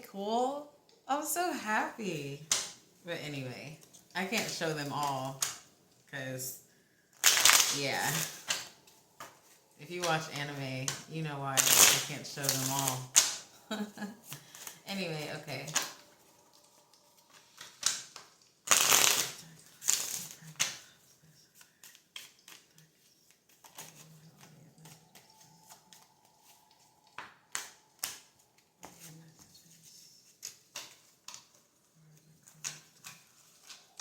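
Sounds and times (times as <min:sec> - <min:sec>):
cards being shuffled: 0:07.2 - 0:10.1, 0:17.1 - 0:20.9, 0:21.5 - 0:29.6.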